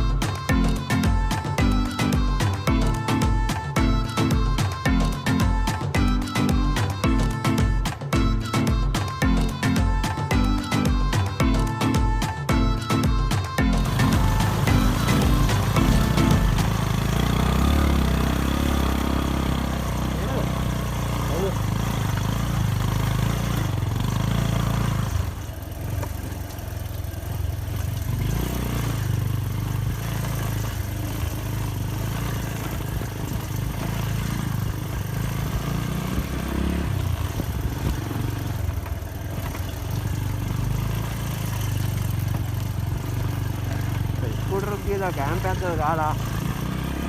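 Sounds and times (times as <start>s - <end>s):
motorcycle engine running: 0.0s - 47.0s.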